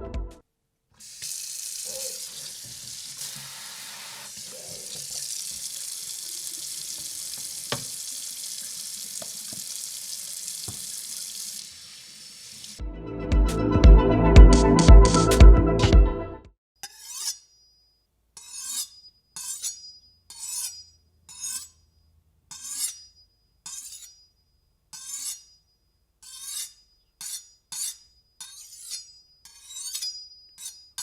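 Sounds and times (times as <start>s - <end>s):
water running from tap: 1.0s - 12.8s
faint drips: 1.2s - 12.0s.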